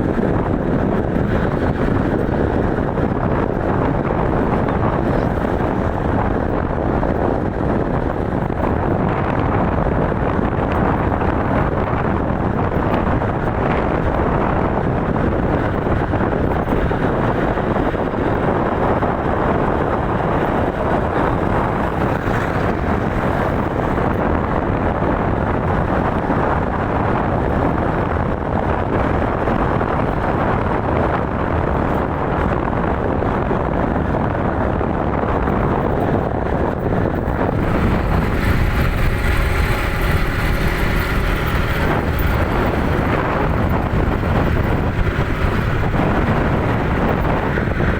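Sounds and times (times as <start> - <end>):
vehicle rumbling in motion: 0.0 - 47.9
wind noise: 0.0 - 47.9
pitched multi-tone hum: 36.8 - 47.9.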